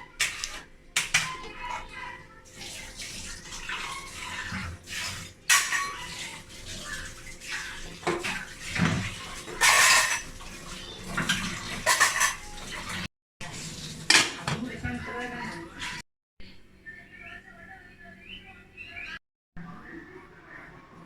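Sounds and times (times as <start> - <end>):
kitchen utensils clinking and scraping: 0.0 - 16.0.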